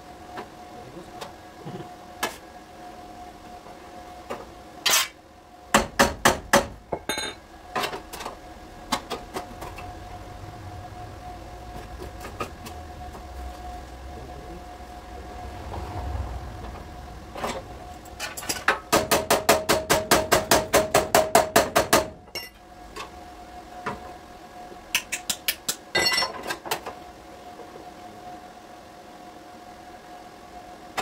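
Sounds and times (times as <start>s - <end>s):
hammer tapping on sheet metal: 5.7s - 6.8s, 18.7s - 22.2s.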